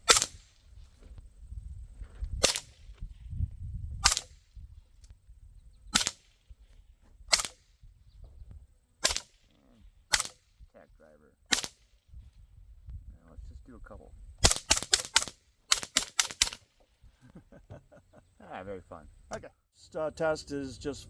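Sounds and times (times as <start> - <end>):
suppressed gunshots: 0.0 - 0.7, 2.4 - 3.0, 4.0 - 4.5, 5.9 - 6.6, 7.3 - 7.8, 9.0 - 10.6, 11.5 - 12.0, 14.4 - 16.8.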